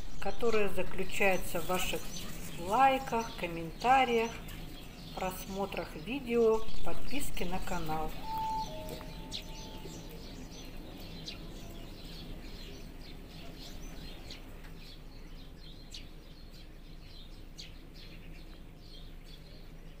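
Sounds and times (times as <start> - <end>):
birds chirping: 0.0 - 20.0
steady low rumble: 6.0 - 10.2.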